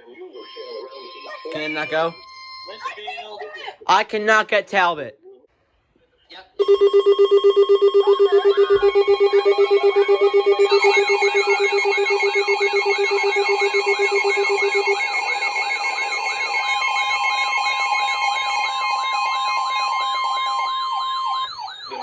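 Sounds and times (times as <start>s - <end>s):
fast-pulsing low beep: 6.6s - 22.0s
steady alert tones: 6.6s - 22.0s
warbling siren-like tone: 6.6s - 22.0s.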